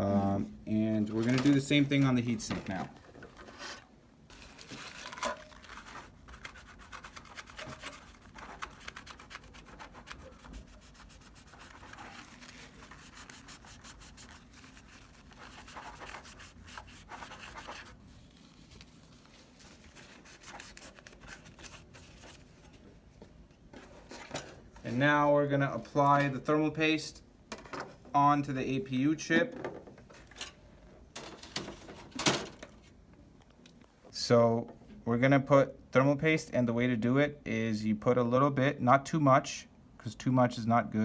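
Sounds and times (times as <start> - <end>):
paper towel rubbing on metal: 3.4 - 22.6.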